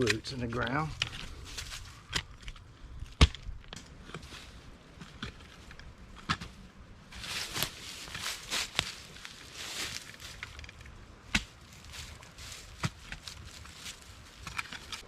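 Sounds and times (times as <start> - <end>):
shovel chopping into soil: 11.3 - 11.6.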